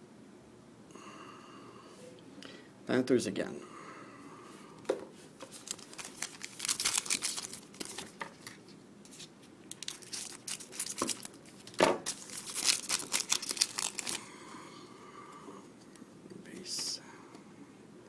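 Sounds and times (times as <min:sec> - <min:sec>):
wrapper tearing and crinkling: 0:05.4 - 0:14.2.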